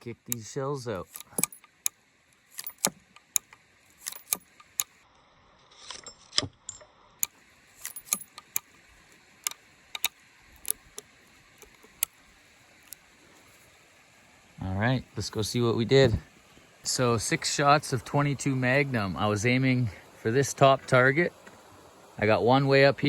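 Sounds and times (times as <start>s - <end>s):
revolver metallic clicks: 0.0s - 5.0s, 5.9s - 12.2s.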